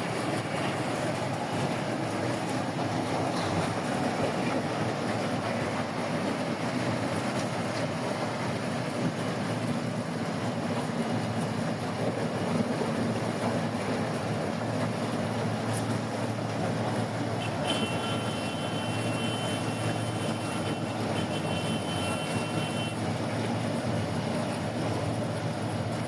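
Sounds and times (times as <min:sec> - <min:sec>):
harvesting machine engine drone: 0:00.0 - 0:26.0.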